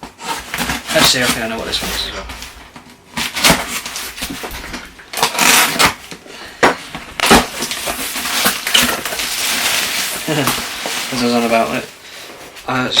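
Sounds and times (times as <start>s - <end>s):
cardboard ripping: 3.2s - 6.1s, 7.2s - 11.6s
packaging rustling: 3.2s - 12.6s.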